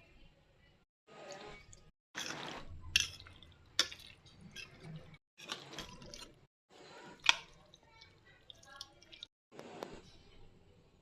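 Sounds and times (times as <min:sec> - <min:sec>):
wet sloppy food preparation: 0:01.1 - 0:09.6.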